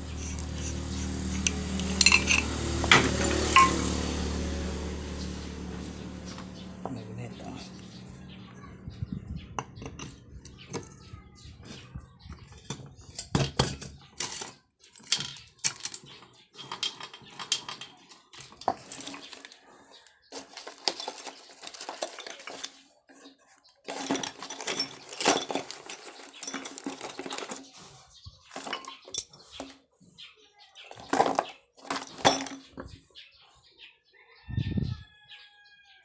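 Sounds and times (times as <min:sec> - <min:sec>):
metallic clinks of hand tools: 0:01.3 - 0:03.9.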